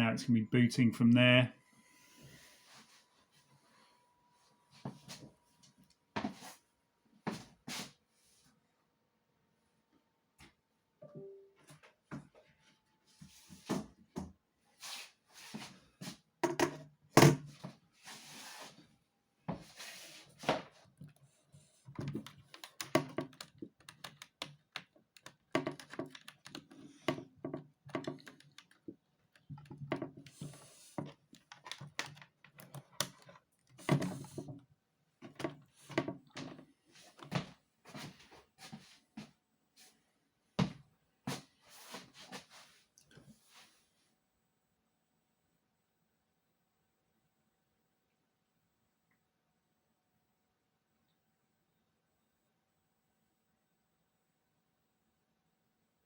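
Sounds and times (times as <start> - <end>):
laptop handling clicks and thunks: 21.9 - 34.6.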